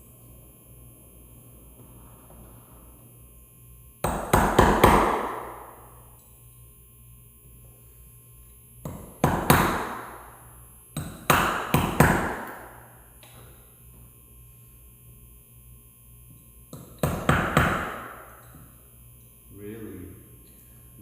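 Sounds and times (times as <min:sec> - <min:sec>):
hammer striking a chisel: 0:04.0 - 0:05.7, 0:08.8 - 0:10.3, 0:11.0 - 0:12.7, 0:16.7 - 0:18.7.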